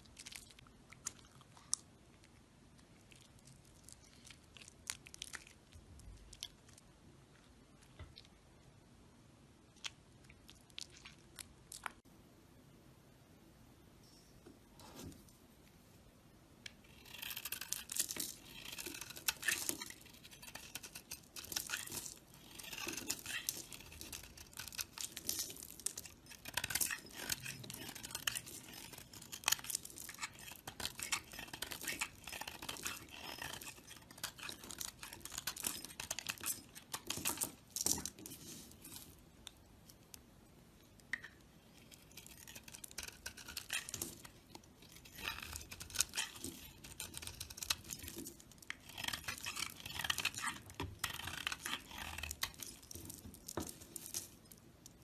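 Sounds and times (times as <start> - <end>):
knife scraping through dry soap: 16.8 - 39.2, 41.7 - 54.4.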